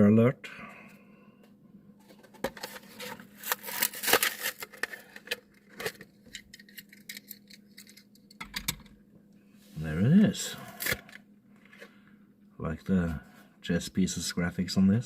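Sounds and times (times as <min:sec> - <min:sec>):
plastic blister pack crackling tearing: 0:02.8 - 0:06.0.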